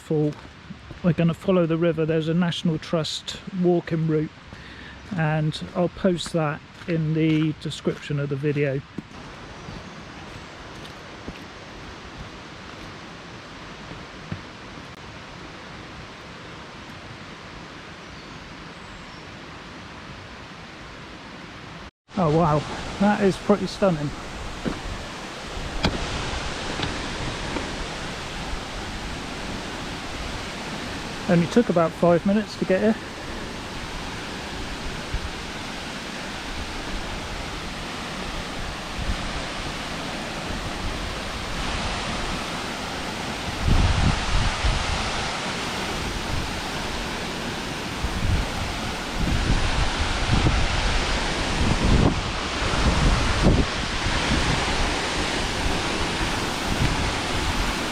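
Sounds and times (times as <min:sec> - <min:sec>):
waterfall rushing: 0:22.1 - 0:57.9.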